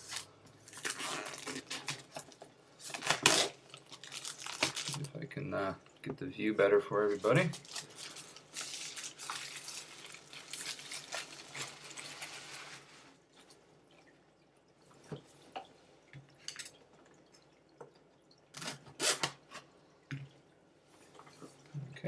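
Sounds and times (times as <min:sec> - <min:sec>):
packaging rustling and crinkling: 0:00.0 - 0:05.2, 0:07.1 - 0:13.2.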